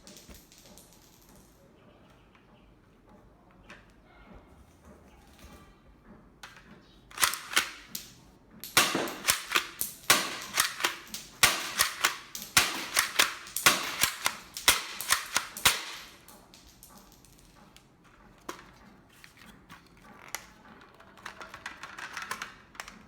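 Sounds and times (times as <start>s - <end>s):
toy gun plastic clicks: 6.4s - 17.2s, 20.2s - 23.0s.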